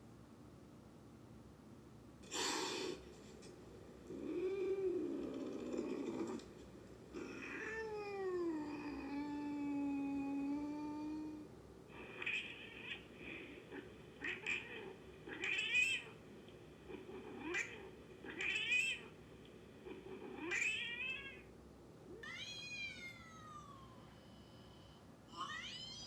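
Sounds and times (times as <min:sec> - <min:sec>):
cat yowling and hissing: 0:02.3 - 0:03.0, 0:07.2 - 0:11.4, 0:12.0 - 0:16.2, 0:17.0 - 0:19.1, 0:20.0 - 0:21.5.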